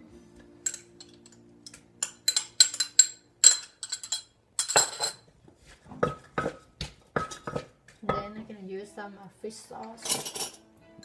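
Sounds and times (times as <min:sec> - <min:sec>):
pestle knocking in a mortar: 0:06.0 - 0:08.3.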